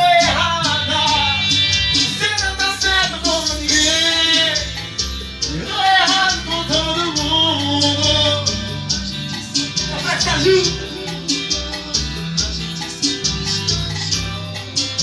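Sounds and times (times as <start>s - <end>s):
band accompaniment with steady beat: 0.0s - 15.0s
man singing: 0.0s - 15.0s.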